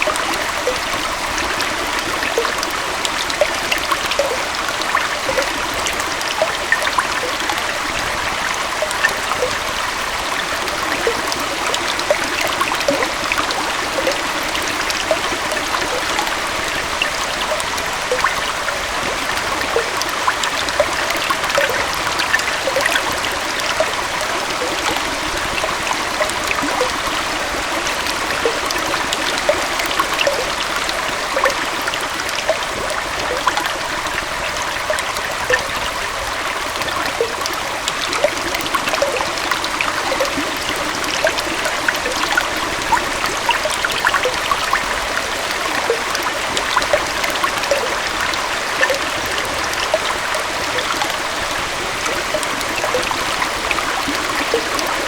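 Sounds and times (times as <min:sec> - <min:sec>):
waterfall and stream flowing: 0:00.0 - 0:55.0.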